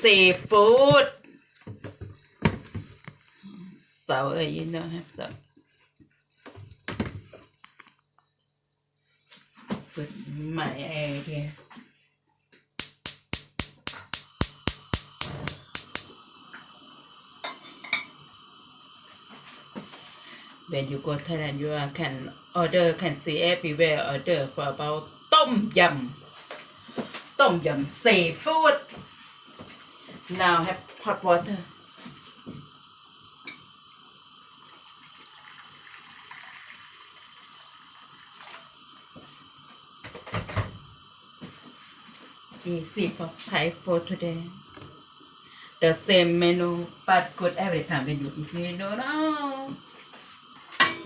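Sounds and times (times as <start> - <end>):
steady low hiss: 12.8 - 35.6, 37.2 - 51.0.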